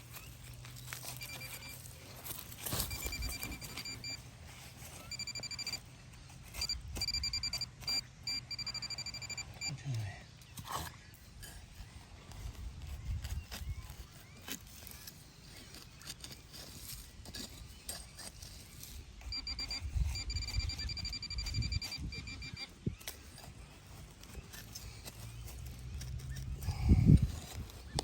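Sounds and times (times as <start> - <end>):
digging scrapes and knocks: 0.0 - 8.8, 10.5 - 28.0
metal detector beeping: 0.2 - 10.0, 19.2 - 24.8.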